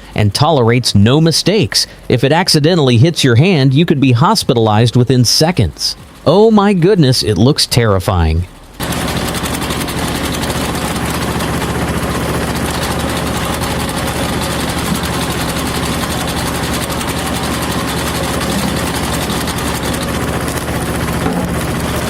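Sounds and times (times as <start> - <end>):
tractor engine running: 8.6 - 22.0.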